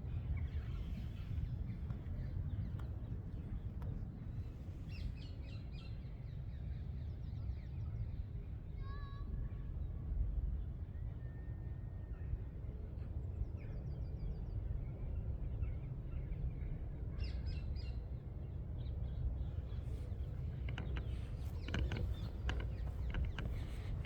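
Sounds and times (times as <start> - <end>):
low rumble on microphone: 19.2 - 24.0
small birds chirping: 19.4 - 24.0.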